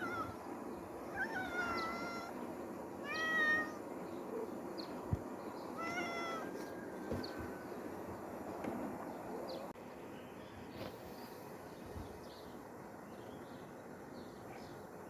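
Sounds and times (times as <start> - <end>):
cat meowing: 1.1 - 2.4, 3.0 - 3.8, 5.8 - 6.6.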